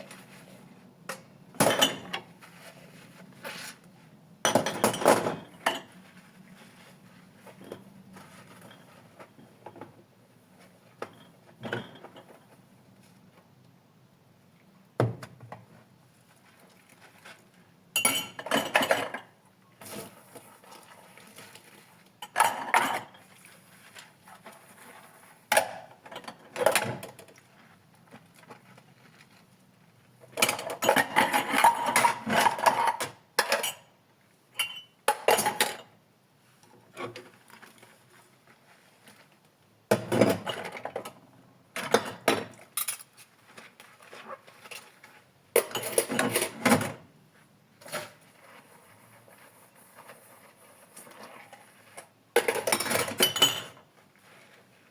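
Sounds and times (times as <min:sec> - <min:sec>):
dishes and cutlery clinking: 0:18.0 - 0:19.3, 0:34.6 - 0:35.9, 0:45.6 - 0:47.0, 0:52.4 - 0:53.8.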